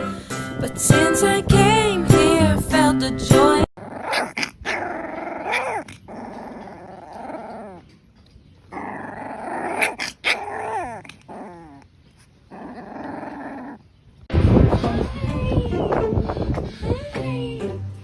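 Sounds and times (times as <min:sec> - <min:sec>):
dog growling: 0:03.8 - 0:07.9, 0:08.7 - 0:13.9
dog whining yelps: 0:04.0 - 0:07.9, 0:08.7 - 0:13.8.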